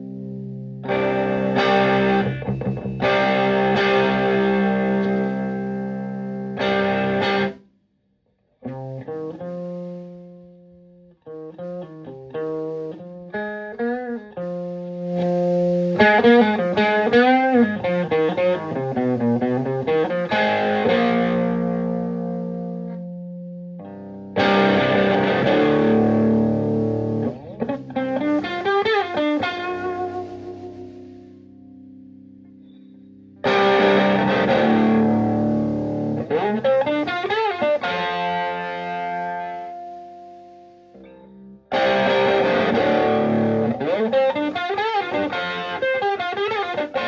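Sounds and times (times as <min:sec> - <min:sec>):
overdriven electric guitar: 0:00.0 - 0:07.6, 0:08.6 - 0:47.0.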